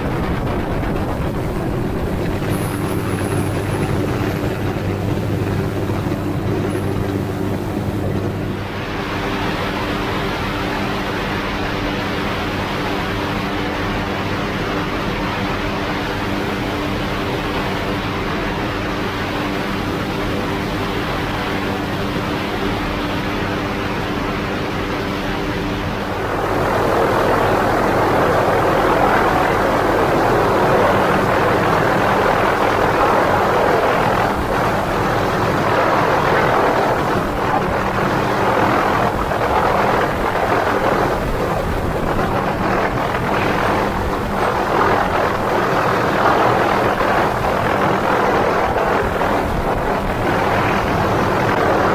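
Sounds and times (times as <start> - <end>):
loud rushing noise: 0.0 - 4.6
helicopter turbine and rotor: 0.0 - 51.9.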